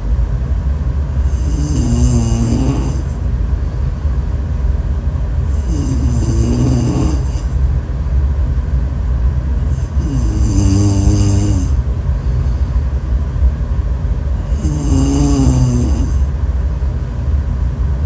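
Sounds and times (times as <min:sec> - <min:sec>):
constant low rumble: 0:00.0 - 0:18.0
person snoring: 0:01.2 - 0:03.2, 0:05.5 - 0:07.6, 0:09.7 - 0:11.8, 0:14.4 - 0:16.3.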